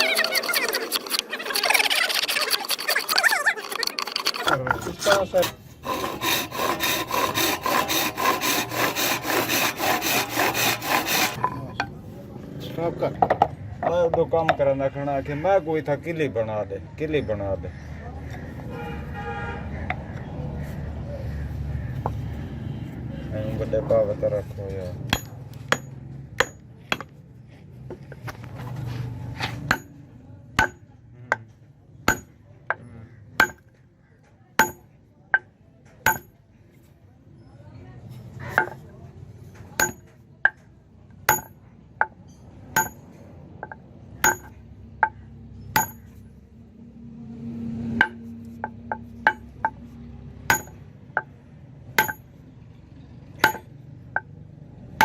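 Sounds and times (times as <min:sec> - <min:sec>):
hammer striking metal: 0:25.1 - 0:27.2, 0:29.7 - 0:30.0, 0:30.6 - 0:30.9, 0:33.4 - 0:33.7, 0:34.6 - 0:35.5, 0:36.1 - 0:36.4, 0:39.8 - 0:40.6, 0:41.3 - 0:41.6, 0:42.8 - 0:46.1, 0:48.0 - 0:49.8, 0:50.5 - 0:50.8, 0:52.0 - 0:52.3, 0:53.4 - 0:54.3.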